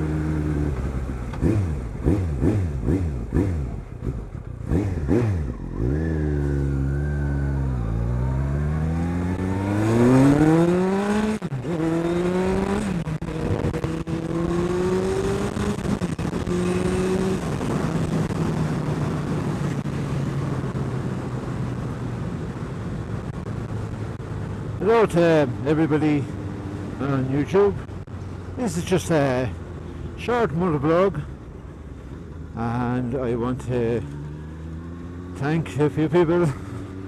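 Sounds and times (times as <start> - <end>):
motorcycle engine revving and accelerating: 0.0 - 21.6, 33.8 - 37.0.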